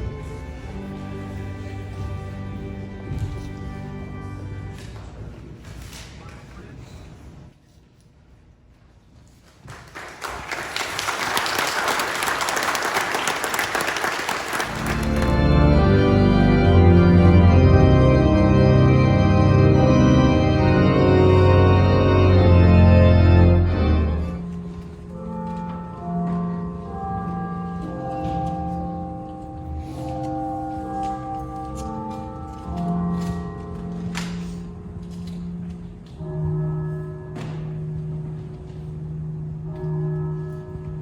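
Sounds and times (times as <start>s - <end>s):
organ chords: 0.0s - 5.1s, 12.0s - 41.0s
audience applauding: 9.6s - 16.0s.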